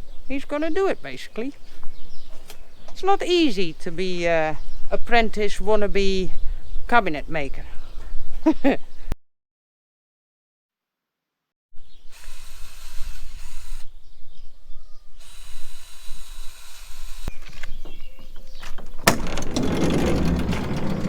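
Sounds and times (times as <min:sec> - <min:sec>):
clicking whirring power tool: 0:12.1 - 0:13.9, 0:15.2 - 0:21.0.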